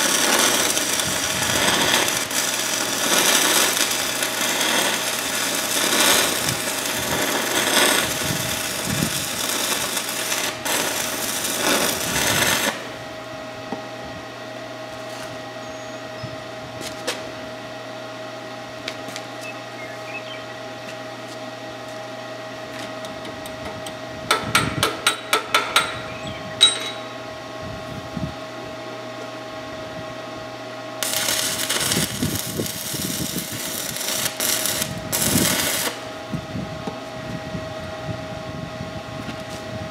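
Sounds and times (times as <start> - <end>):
welding arc crackling: 0.0 - 13.0, 31.0 - 36.1
steady hum: 0.0 - 39.9.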